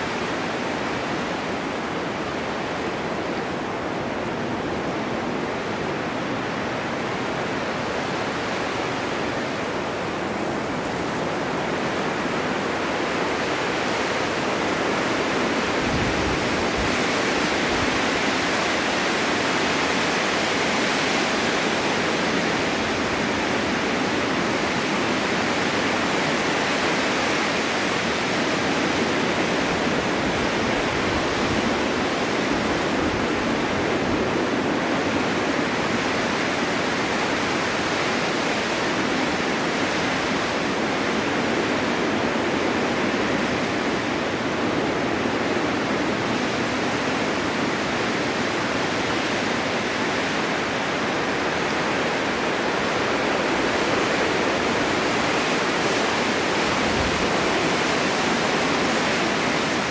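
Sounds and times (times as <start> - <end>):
low rumble of wind gust: 0.0 - 19.6
wind rushing over open ground: 0.0 - 59.9.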